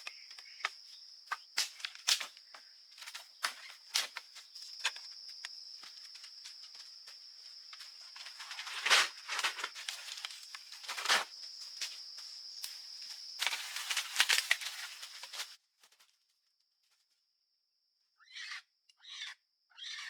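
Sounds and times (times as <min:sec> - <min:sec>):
high insect drone: 0:00.0 - 0:15.6
dry vegetation rustling: 0:00.0 - 0:16.0.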